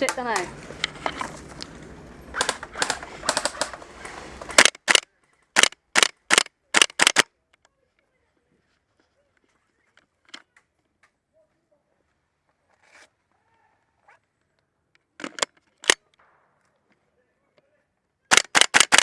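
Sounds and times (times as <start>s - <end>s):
loud sharp rifle cracks: 2.3s - 3.8s, 4.4s - 7.3s, 18.3s - 19.0s
quiet rifle clicks: 4.5s - 7.8s, 18.3s - 19.0s.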